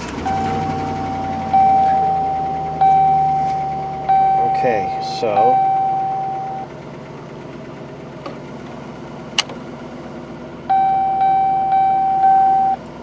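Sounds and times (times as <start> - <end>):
car dash warning chime: 0.0 - 6.8, 10.6 - 13.0.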